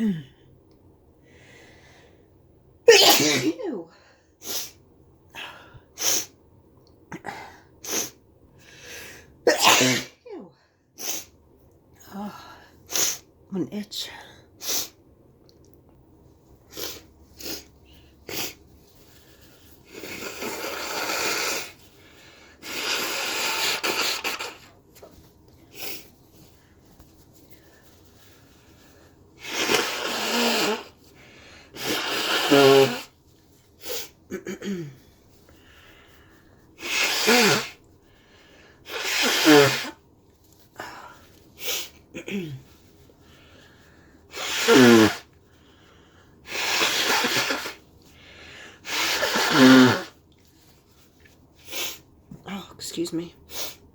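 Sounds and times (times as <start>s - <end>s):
person sneezing: 2.9s - 4.8s, 9.5s - 10.2s, 22.6s - 24.7s, 29.4s - 31.0s, 31.7s - 33.1s, 33.8s - 35.0s, 36.8s - 37.8s, 38.8s - 40.0s, 41.6s - 42.8s, 44.3s - 45.3s, 46.5s - 47.8s, 48.8s - 50.2s.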